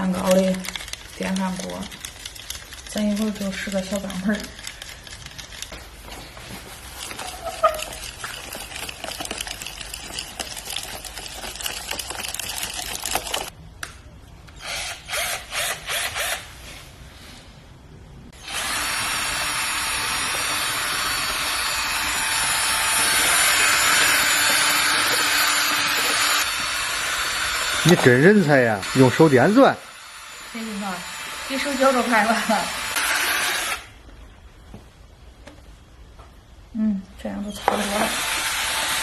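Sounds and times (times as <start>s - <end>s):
electric drill whisking eggs: 0.0s - 5.8s, 7.0s - 13.5s, 18.4s - 34.0s, 37.6s - 39.0s.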